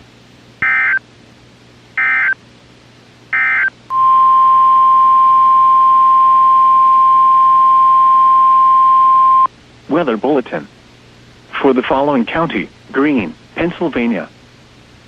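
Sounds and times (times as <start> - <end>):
steady single-pitch alert tone: 0.6 - 1.0, 2.0 - 2.4, 3.3 - 9.5.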